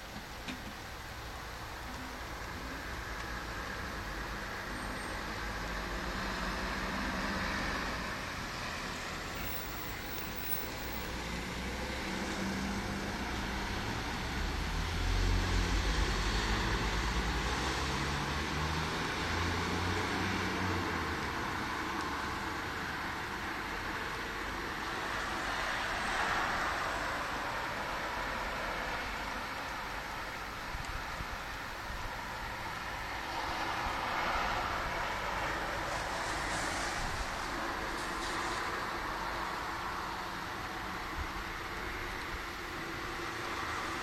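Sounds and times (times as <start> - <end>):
heavy rain hissing: 35.0 - 40.8.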